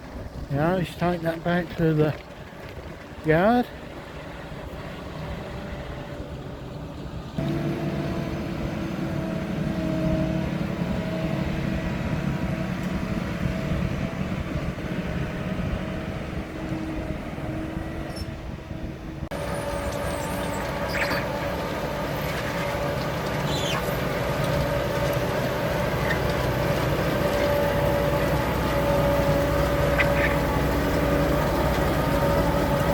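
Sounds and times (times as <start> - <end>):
farm machinery engines running: 0.0 - 32.9.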